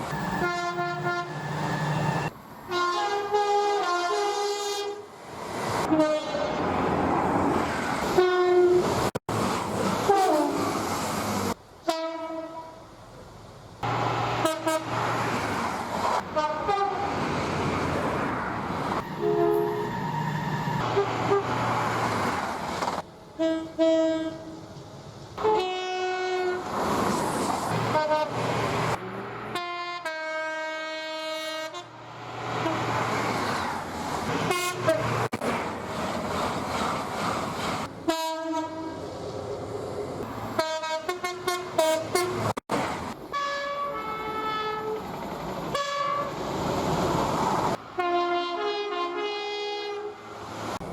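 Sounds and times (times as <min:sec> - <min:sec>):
two-tone train horn blasts: 0:00.2 - 0:05.0, 0:05.9 - 0:06.5, 0:08.2 - 0:08.9, 0:11.8 - 0:12.8, 0:14.4 - 0:15.0, 0:16.3 - 0:17.1, 0:19.0 - 0:20.2, 0:23.4 - 0:24.6, 0:25.4 - 0:26.6, 0:29.5 - 0:32.0, 0:34.5 - 0:35.1, 0:38.0 - 0:39.0, 0:40.6 - 0:42.5, 0:43.3 - 0:45.0, 0:45.7 - 0:46.3, 0:48.0 - 0:50.2
trains passing rumble: 0:05.0 - 0:48.8.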